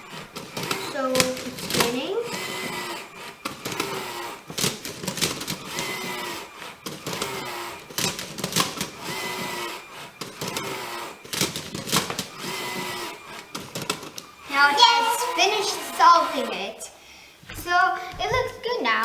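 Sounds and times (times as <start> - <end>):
small electric motors whining: 0.0 - 16.9
plastic clicks and clacks: 0.2 - 14.6.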